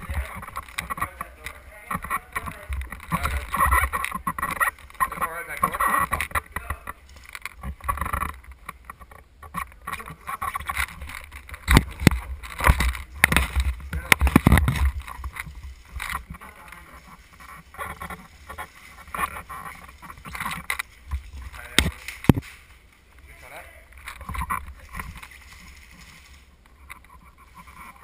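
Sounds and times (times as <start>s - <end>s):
low rumble of wind: 0.0s - 28.0s.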